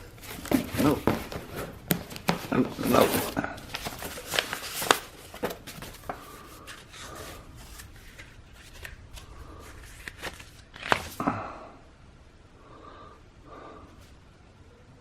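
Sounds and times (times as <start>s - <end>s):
packaging rustling and clicking: 0.0s - 11.2s.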